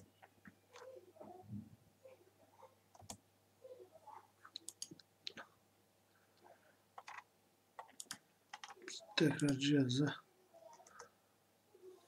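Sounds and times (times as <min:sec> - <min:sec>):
computer mouse and keyboard clicks: 0:02.9 - 0:03.2, 0:04.5 - 0:05.4, 0:07.0 - 0:09.6, 0:10.7 - 0:11.1.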